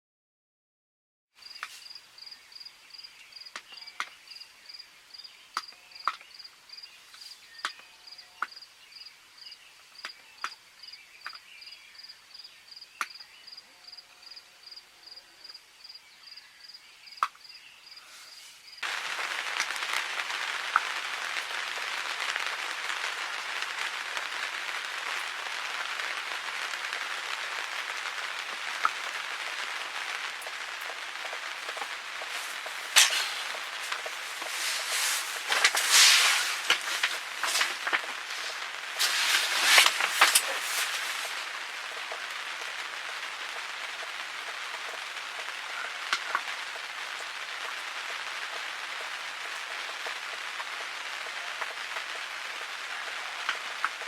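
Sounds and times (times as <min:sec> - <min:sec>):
steady hiss of rain: 0:01.4 - 0:54.0
sharp drips ticking: 0:18.8 - 0:46.5.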